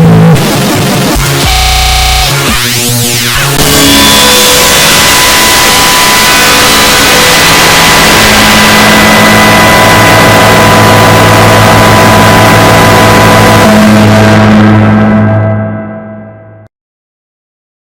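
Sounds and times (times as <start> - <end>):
loud distorted noise: 0.0 - 16.7
low hum: 3.6 - 16.7.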